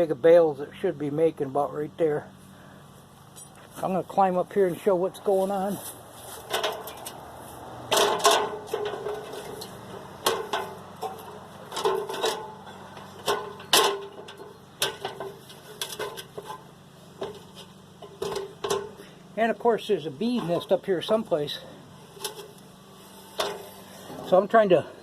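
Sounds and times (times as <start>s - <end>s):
metallic knocks and clanks: 6.4s - 7.2s, 7.9s - 16.6s, 17.2s - 19.0s.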